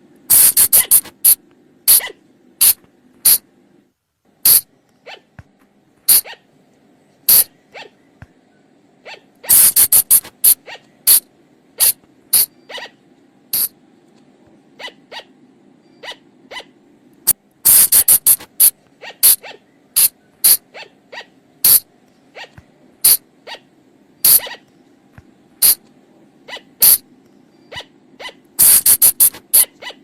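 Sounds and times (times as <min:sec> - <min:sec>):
faint steady hum: 0:00.0 - 0:30.0
flying lemur calls: 0:00.3 - 0:03.4, 0:06.1 - 0:06.4, 0:07.3 - 0:08.0, 0:09.0 - 0:11.2, 0:11.8 - 0:13.0, 0:16.0 - 0:16.8, 0:17.7 - 0:24.7, 0:26.4 - 0:30.0.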